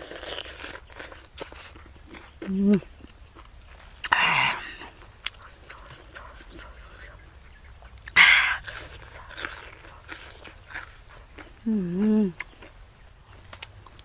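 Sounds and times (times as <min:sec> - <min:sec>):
person biting crisp food: 0:00.0 - 0:02.8, 0:03.4 - 0:07.1, 0:08.0 - 0:12.7
chewing clicks: 0:04.9 - 0:07.2, 0:13.3 - 0:14.0.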